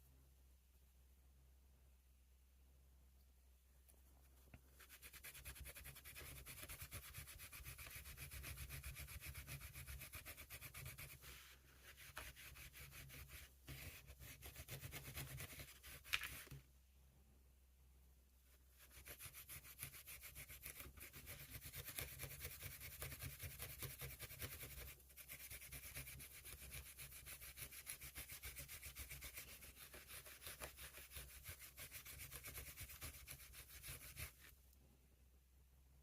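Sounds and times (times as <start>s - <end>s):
emery cloth rubbing on steel: 4.3s - 16.5s.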